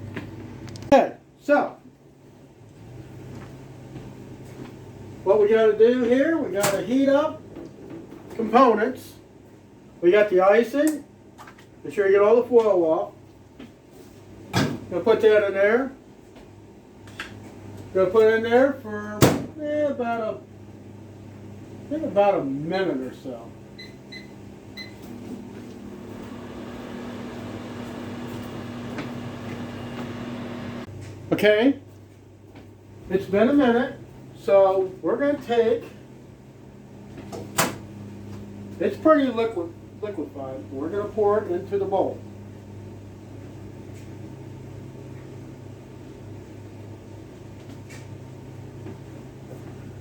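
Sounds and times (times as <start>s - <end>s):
appliance electrical hum: 0.0s - 50.0s
microwave oven humming: 23.4s - 31.1s
microwave keypad beep: 23.8s - 25.0s.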